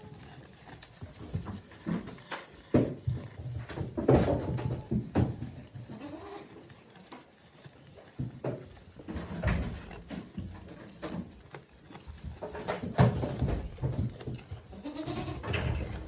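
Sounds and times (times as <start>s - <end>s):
sharp knocks and clatters: 1.0s - 6.0s, 8.1s - 16.0s
goats bleating: 14.7s - 15.8s.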